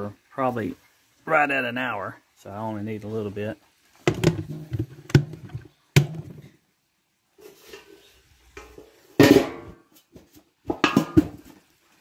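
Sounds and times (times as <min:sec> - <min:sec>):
metal can and lid clanking: 0:04.1 - 0:06.5, 0:08.6 - 0:09.9, 0:10.6 - 0:11.6.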